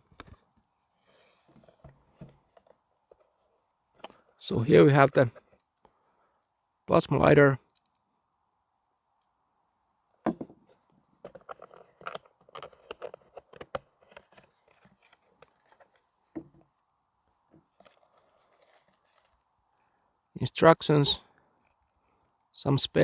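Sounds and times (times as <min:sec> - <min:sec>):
cardboard and plastic rustling: 0:11.2 - 0:16.6, 0:17.6 - 0:19.4.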